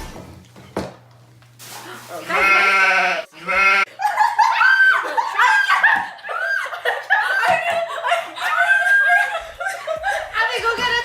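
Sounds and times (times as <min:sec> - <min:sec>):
girls laughing: 0:03.6 - 0:11.0.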